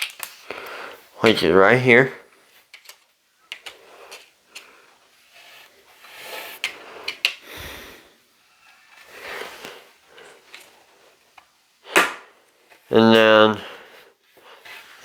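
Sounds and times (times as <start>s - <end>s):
plastic pieces clicking: 0.0s - 0.4s
plastic pieces rustling: 0.0s - 0.8s.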